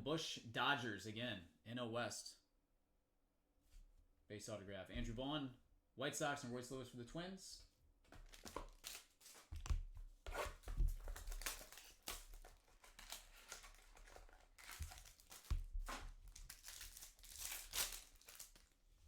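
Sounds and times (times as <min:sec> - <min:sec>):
plastic packaging crinkling and tearing: 0:08.2 - 0:09.6, 0:10.3 - 0:18.9.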